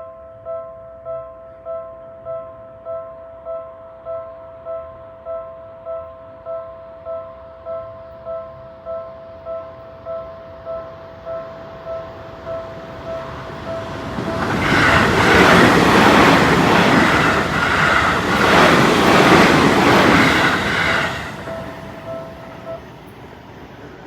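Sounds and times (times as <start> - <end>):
train passing: 10.7 - 24.0.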